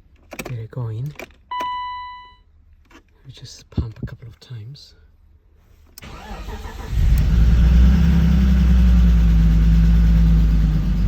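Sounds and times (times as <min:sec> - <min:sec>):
engine cranking and starting: 0:06.0 - 0:10.8.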